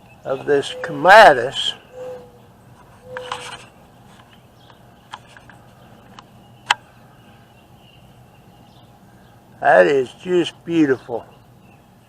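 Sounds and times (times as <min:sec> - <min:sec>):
sharp clicks: 0:03.1 - 0:03.6, 0:04.2 - 0:06.8.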